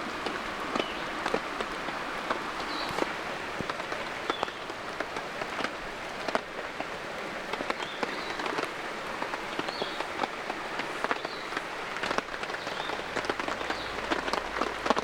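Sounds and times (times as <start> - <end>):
light rain hissing: 0.0 - 15.0
raindrops ticking: 0.0 - 15.0.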